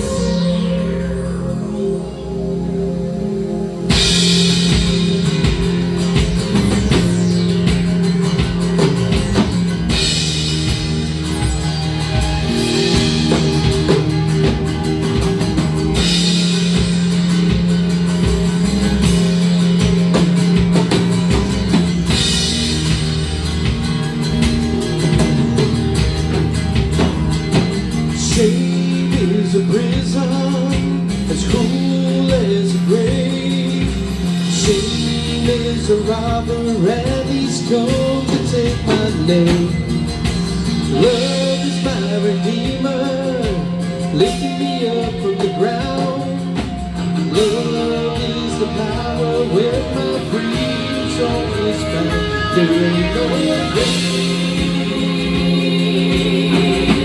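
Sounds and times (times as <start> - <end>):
sustained low notes: 0.0 - 37.4
drum kit: 0.0 - 57.0
electric guitar: 0.0 - 57.0.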